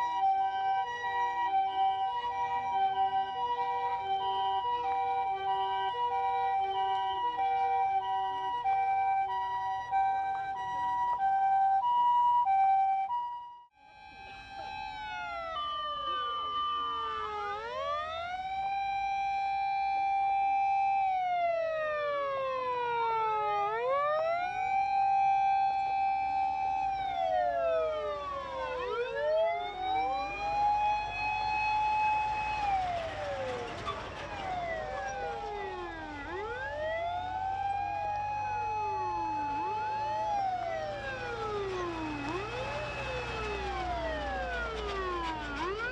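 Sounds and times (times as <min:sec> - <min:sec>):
heavy vehicle engines rumbling: 0:00.0 - 0:11.9, 0:14.0 - 0:45.9
ambulance two-tone siren: 0:00.0 - 0:45.9
fire engine wail sirens: 0:00.0 - 0:45.9.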